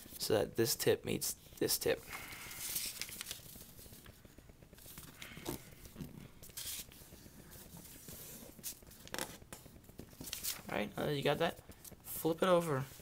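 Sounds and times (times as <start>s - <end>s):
paper being folded: 2.2s - 10.9s.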